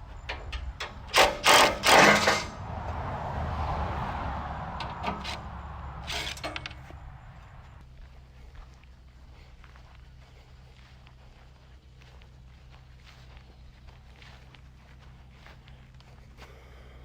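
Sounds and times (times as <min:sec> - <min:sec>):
loud knocks and clatter: 0:01.1 - 0:02.6.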